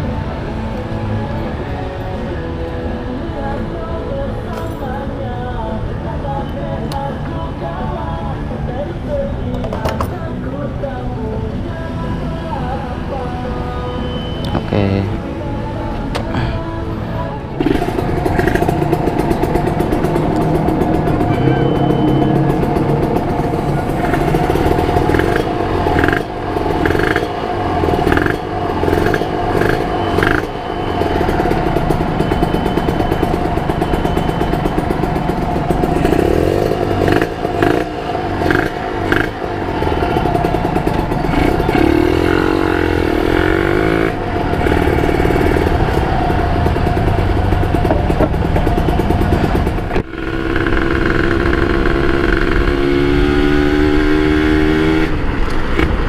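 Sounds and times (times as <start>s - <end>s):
motorcycle engine revving: 17.6s - 56.0s.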